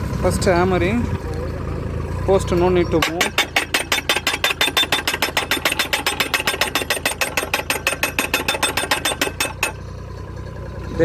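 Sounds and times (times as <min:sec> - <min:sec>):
machine engine hum: 0:00.0 - 0:11.0
ringing metal hammer blows: 0:02.9 - 0:09.8.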